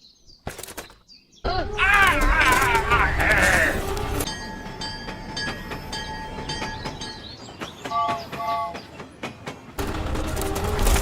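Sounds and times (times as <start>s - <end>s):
train running: 2.7s - 11.0s.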